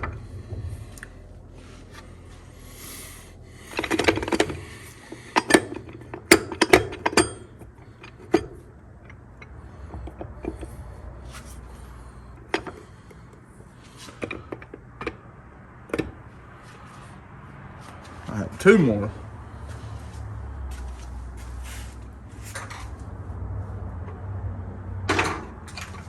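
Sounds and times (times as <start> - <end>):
metal clutch plates clinking: 3.6 - 16.3, 25.1 - 26.0.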